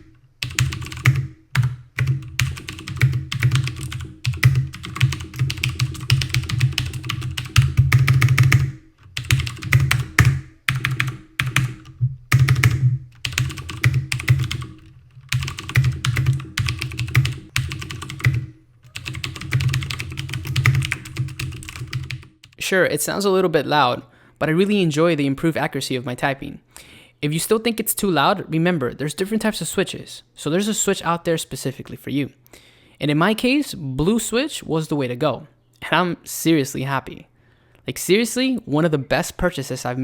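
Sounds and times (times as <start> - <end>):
fast typing on clicky keyboard: 0.0 - 22.6.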